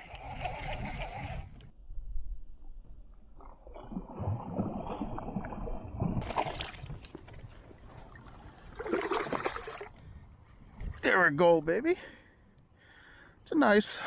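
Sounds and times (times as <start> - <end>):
water splashing beside a kayak: 3.7 - 10.1.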